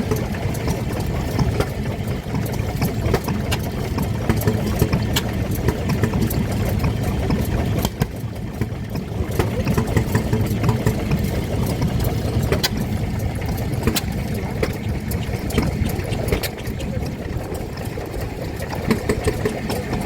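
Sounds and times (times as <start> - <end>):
stationary engines chugging: 0.0 - 20.0
sharp clicks and knocks: 2.8 - 6.4, 12.5 - 18.0.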